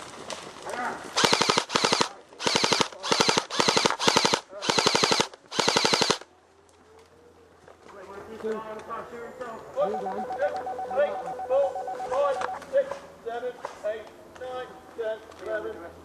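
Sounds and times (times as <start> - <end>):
airsoft rifle automatic fire: 1.2 - 6.2.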